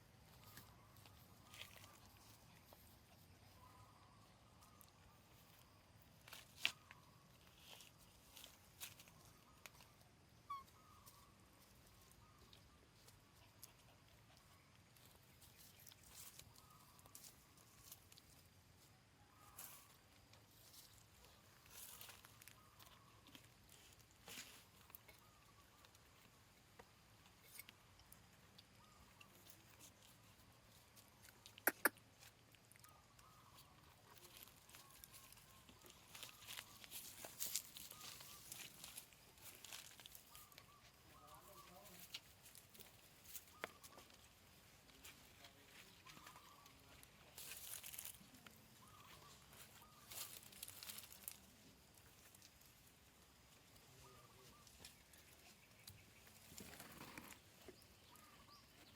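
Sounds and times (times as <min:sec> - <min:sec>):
short chirping animal calls: 0:10.4 - 0:11.4, 0:31.4 - 0:33.7.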